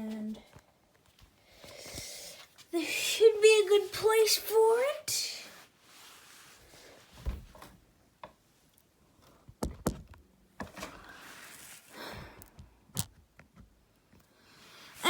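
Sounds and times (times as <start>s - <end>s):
rustling: 5.4s - 7.7s, 10.6s - 12.4s.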